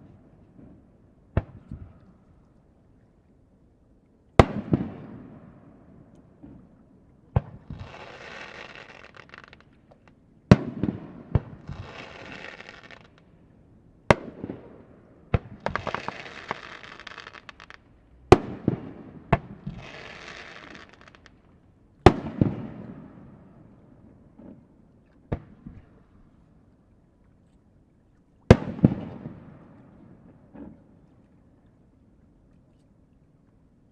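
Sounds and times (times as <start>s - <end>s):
crackling firework stars: 7.3s - 13.4s, 14.1s - 23.0s
firework bangs: 15.4s - 21.3s.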